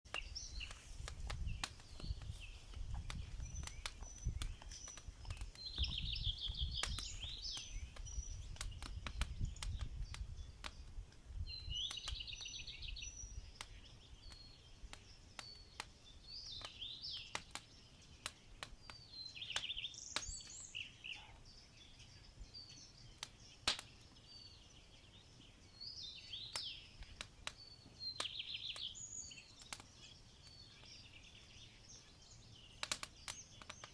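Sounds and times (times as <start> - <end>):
small birds singing: 0.0 - 33.9
sharp clicks: 0.1 - 10.8, 23.2 - 23.9, 29.6 - 29.9, 32.8 - 33.9.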